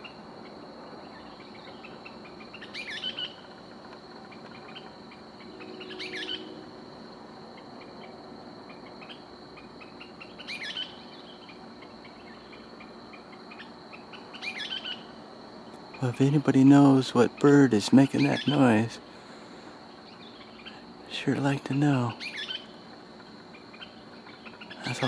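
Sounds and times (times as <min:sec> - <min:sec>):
insect trill: 0:00.0 - 0:25.0
bird call of looping chirps: 0:04.7 - 0:06.7.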